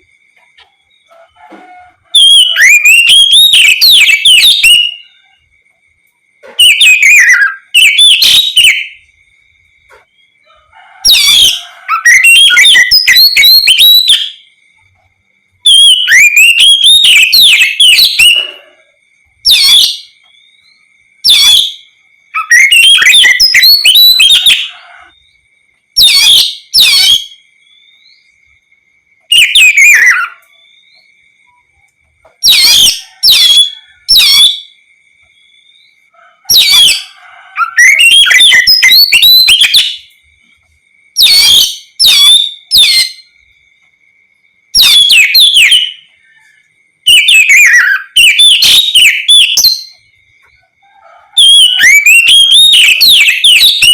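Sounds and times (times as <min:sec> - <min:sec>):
magpie-robin singing: 0:02.2 - 0:05.2, 0:06.4 - 0:09.0, 0:11.1 - 0:14.5, 0:15.6 - 0:18.6, 0:19.4 - 0:24.7, 0:26.0 - 0:28.3, 0:29.3 - 0:30.5, 0:32.4 - 0:34.7, 0:36.5 - 0:40.1, 0:41.2 - 0:43.3, 0:44.8 - 0:46.1, 0:47.1 - 0:50.1, 0:51.4 - 0:53.9.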